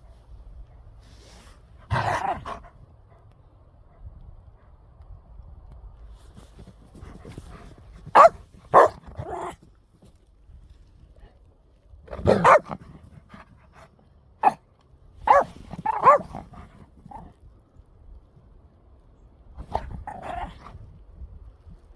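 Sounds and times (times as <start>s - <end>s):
dog barking: 1.9s - 2.6s, 8.1s - 9.6s, 12.1s - 12.8s, 15.3s - 17.3s.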